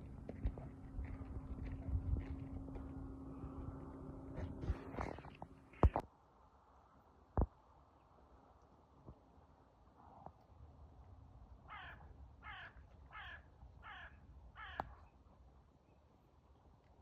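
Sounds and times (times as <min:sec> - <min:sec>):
faint crow cawing: 0:11.6 - 0:15.1.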